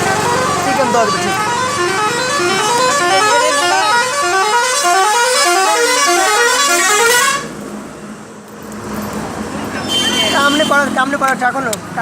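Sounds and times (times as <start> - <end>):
electronic tune of buzzy notes: 0.7 - 6.5.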